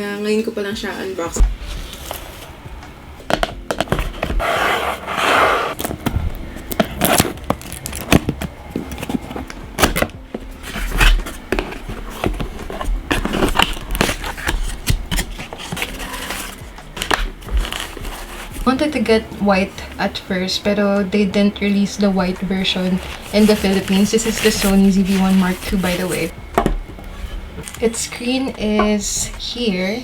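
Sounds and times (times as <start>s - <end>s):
packaging rustling: 3.2s - 18.7s, 22.2s - 26.4s
box scraping and tapping: 6.7s - 18.8s, 22.3s - 26.9s.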